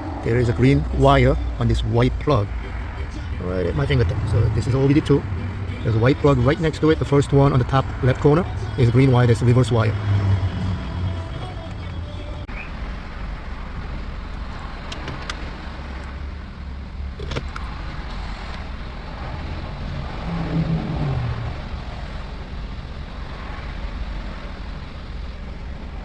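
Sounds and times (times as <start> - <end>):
car low rumble: 0.0 - 26.0.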